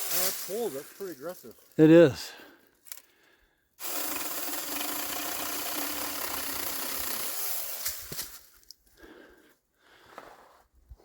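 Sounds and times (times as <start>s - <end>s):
electric chainsaw cutting wood: 3.8s - 8.3s.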